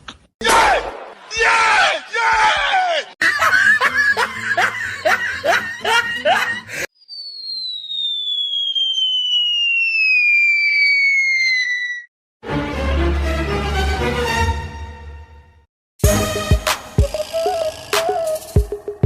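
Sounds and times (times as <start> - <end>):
rhythmic laughter: 3.2 - 6.9
whistle sliding down in pitch: 6.9 - 12.1.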